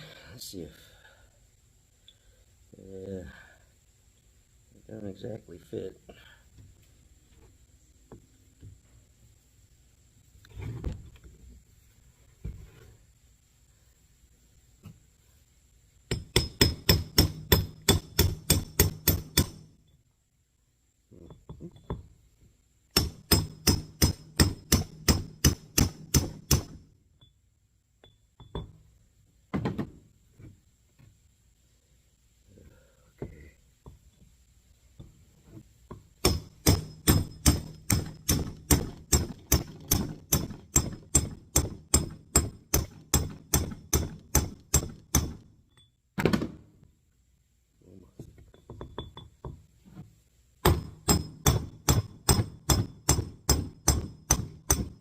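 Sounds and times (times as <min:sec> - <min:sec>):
hammer tapping metal punch: 0:16.1 - 0:19.8, 0:22.9 - 0:27.3, 0:28.0 - 0:28.8, 0:35.9 - 0:46.4, 0:48.4 - 0:49.7, 0:50.6 - 0:55.0.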